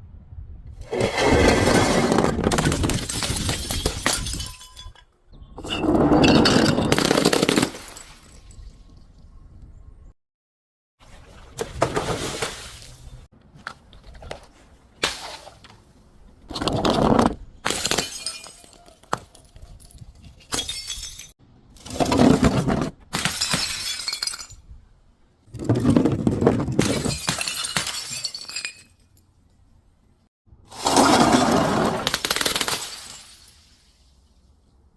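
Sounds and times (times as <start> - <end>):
glass breaking and crunching: 2.5 - 5.0, 17.6 - 21.4, 23.1 - 24.6, 26.7 - 29.2.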